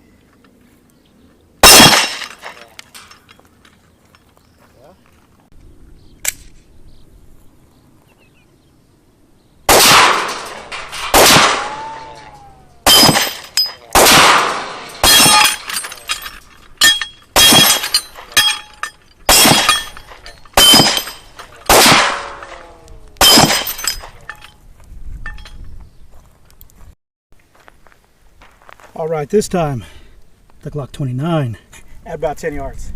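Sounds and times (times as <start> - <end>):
pistol shots with ringing tail: 1.6 - 2.6, 9.7 - 16.1, 16.8 - 24.3.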